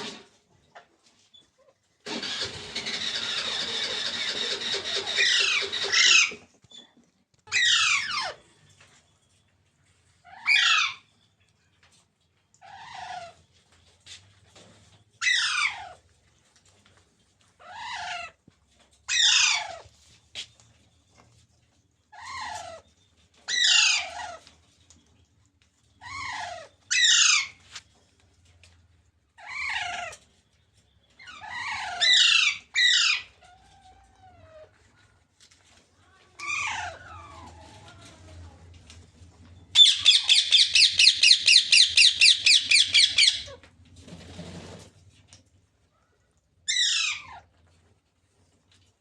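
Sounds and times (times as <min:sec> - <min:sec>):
parrot calling: 0:02.2 - 0:06.4, 0:07.5 - 0:08.4, 0:19.1 - 0:19.8, 0:31.2 - 0:33.4, 0:39.7 - 0:43.6.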